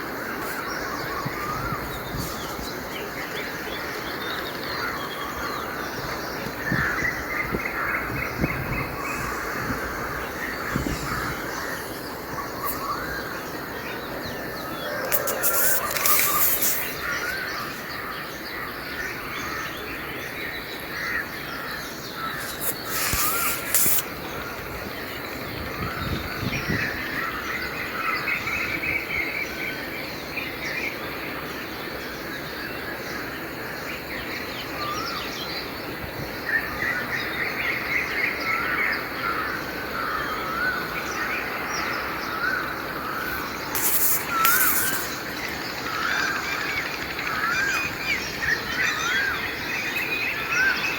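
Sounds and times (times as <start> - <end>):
birds chirping and trilling: 0.0 - 31.0, 33.1 - 50.9
steady background hiss: 0.0 - 50.9
hissy bursts: 8.9 - 13.6, 14.4 - 17.8, 22.3 - 24.4, 43.2 - 46.8.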